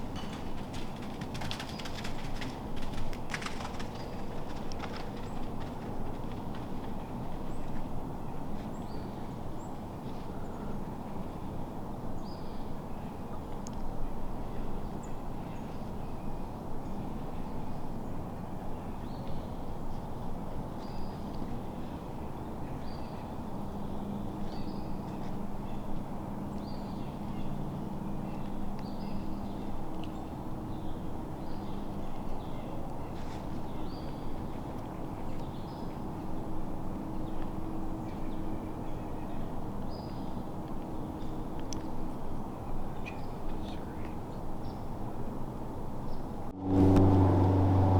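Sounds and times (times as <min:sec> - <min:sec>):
low rumble of road traffic: 0:00.0 - 0:47.9
faint hum: 0:46.3 - 0:47.9.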